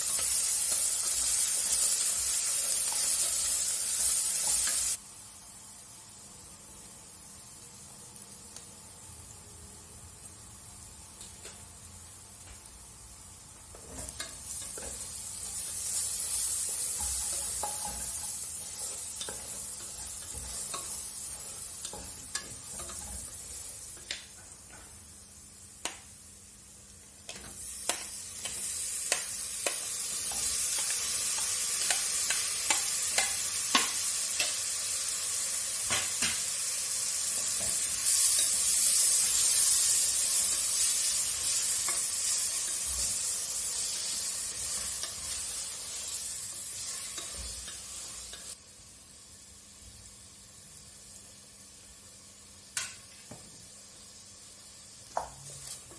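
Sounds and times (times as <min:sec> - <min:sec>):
food sizzling in a pan: 0:00.0 - 0:55.9
utensil clicking against pan: 0:27.3 - 0:34.6.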